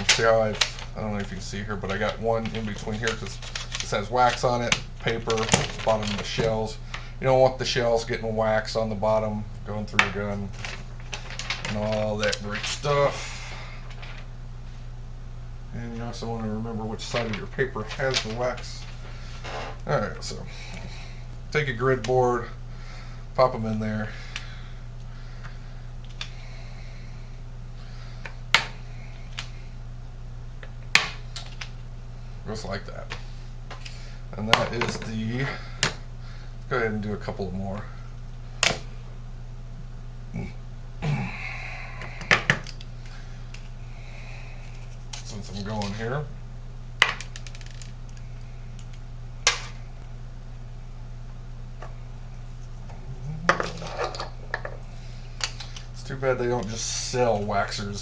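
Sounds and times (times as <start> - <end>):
steady low hum: 0.0 - 58.0
small clicks and rattles: 2.4 - 6.3, 10.6 - 12.8, 47.2 - 49.0.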